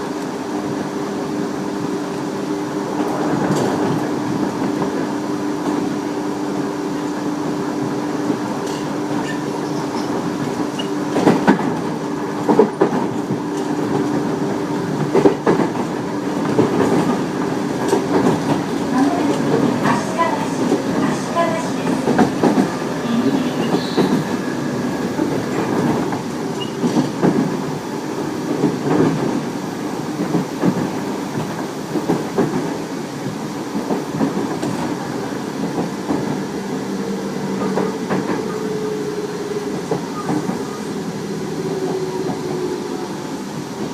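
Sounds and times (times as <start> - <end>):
train wheels clacking over rail joints: 8.2 - 43.0.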